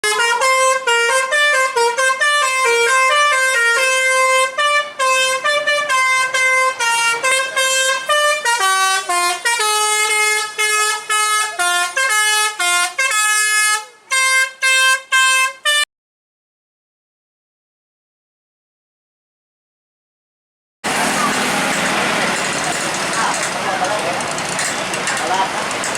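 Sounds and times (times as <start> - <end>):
multi-tone air horn melody: 0.0 - 15.9.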